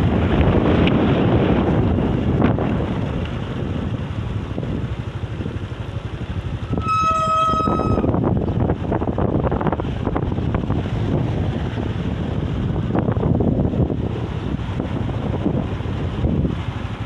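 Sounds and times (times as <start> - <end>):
wind buffeting microphone: 0.0 - 17.0
high-pitched horn-like tone: 6.6 - 8.2.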